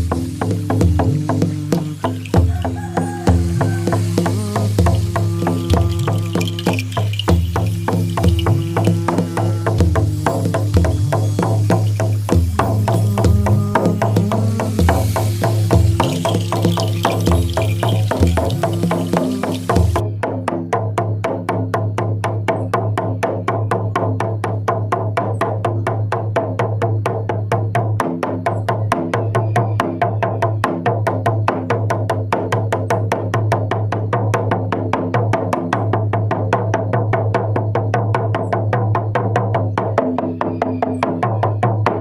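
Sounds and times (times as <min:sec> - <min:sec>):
drum beating fast: 0:00.0 - 0:20.1
low sustained drone: 0:00.2 - 0:20.0.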